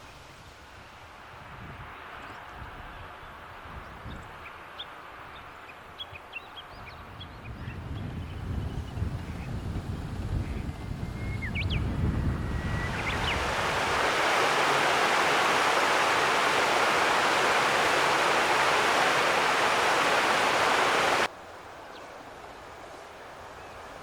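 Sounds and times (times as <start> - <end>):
river water rushing: 12.6 - 24.0.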